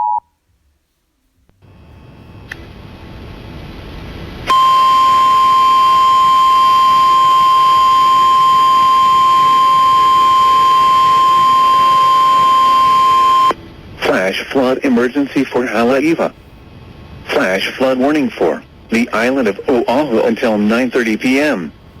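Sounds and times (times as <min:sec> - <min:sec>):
steady single-pitch alarm tone: 0:04.5 - 0:13.6.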